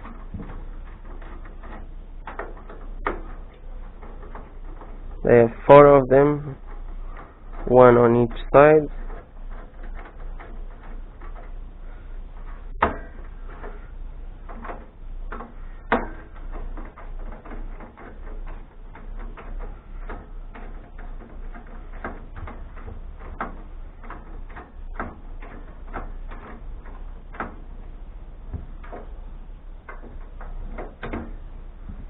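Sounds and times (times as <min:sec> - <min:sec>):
clicks and knocks on computer case: 0:12.7 - 0:13.8, 0:14.4 - 0:27.8, 0:29.8 - 0:32.0.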